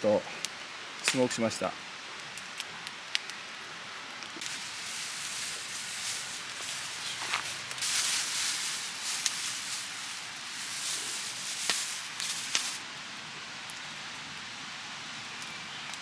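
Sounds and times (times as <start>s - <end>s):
river flowing: 4.4s - 12.8s.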